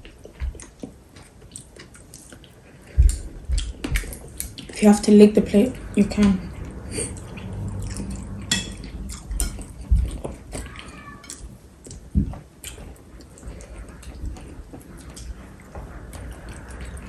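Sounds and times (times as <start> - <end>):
chewing: 0.0 - 17.0
dull low thumps: 5.4 - 10.6
chopsticks clicking on dishes: 7.2 - 12.0.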